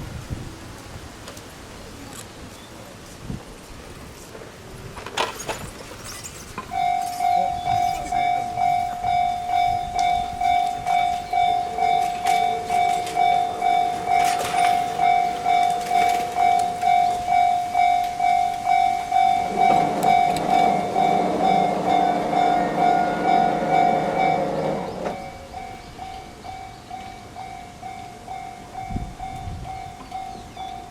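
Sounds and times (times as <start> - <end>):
passing train hum: 0.0 - 30.9
railroad crossing bell dinging: 6.7 - 30.9.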